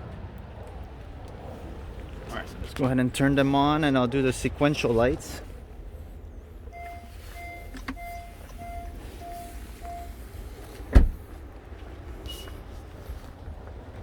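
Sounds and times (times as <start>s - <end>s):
steady low rumble: 0.0s - 14.0s
car turn signal beeping: 6.8s - 10.2s
loud thump: 10.9s - 11.2s.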